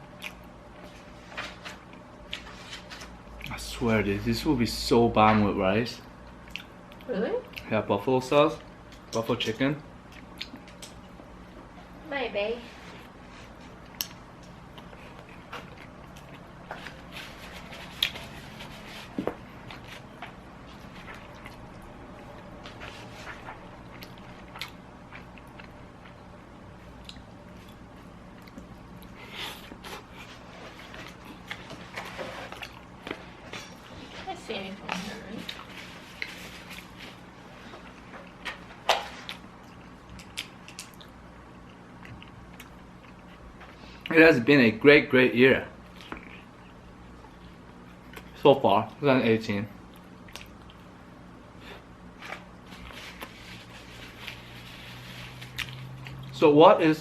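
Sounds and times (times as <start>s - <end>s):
low room hum: 0.0s - 57.0s
wet chewing: 6.3s - 7.7s, 13.8s - 31.8s, 35.4s - 44.1s, 45.8s - 48.4s, 49.8s - 51.0s, 51.7s - 56.4s.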